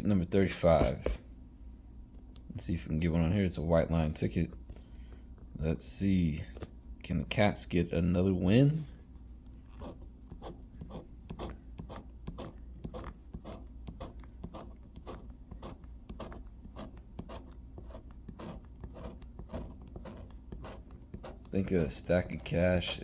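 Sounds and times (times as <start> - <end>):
lottery ticket scratching: 9.6 - 23.0.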